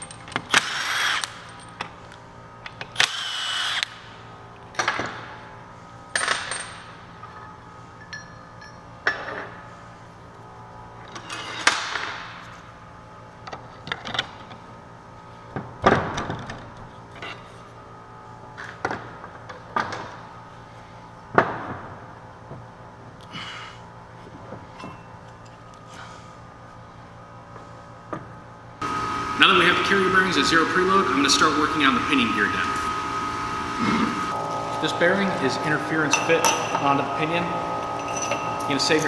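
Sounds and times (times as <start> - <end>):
metal tools clanking on workbench: 36.1 - 39.0.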